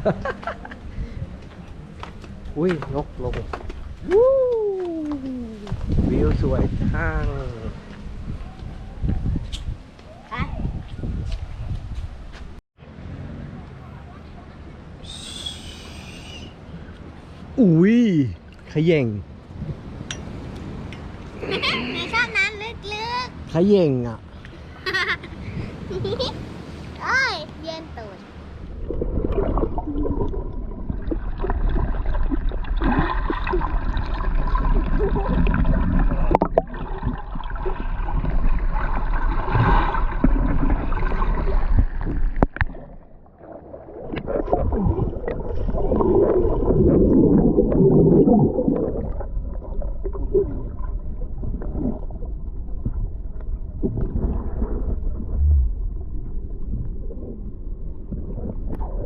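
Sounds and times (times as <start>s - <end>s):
water sloshing and gurgling: 28.0s - 59.0s.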